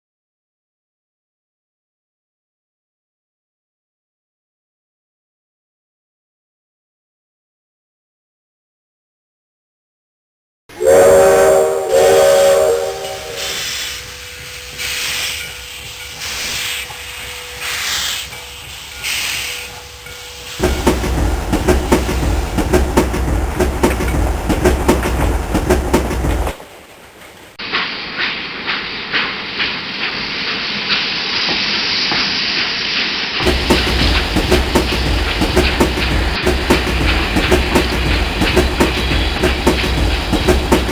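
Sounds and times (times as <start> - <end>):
steam locomotive chime whistle: 10.7 - 22.7, 33.4 - 40.9
chuffs of exhaust steam: 10.7 - 40.9
train rumbling and clacking: 10.7 - 40.9.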